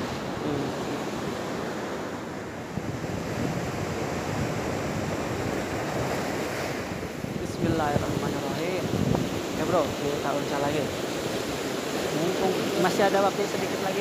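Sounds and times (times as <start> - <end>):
surf washing onto shore: 0.0 - 14.0
wind buffeting microphone: 0.0 - 14.0.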